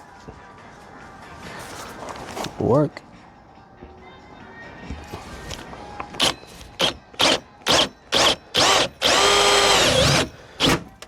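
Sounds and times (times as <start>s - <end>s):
power drill cutting metal: 6.2s - 10.8s.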